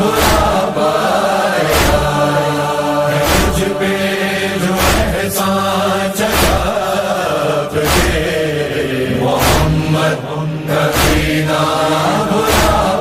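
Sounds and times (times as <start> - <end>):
voices chanting a slow lament: 0.0 - 13.0
heavy regular beat: 1.7 - 2.2, 3.2 - 3.8, 4.8 - 5.3, 6.3 - 6.8, 9.4 - 9.9, 10.9 - 11.4.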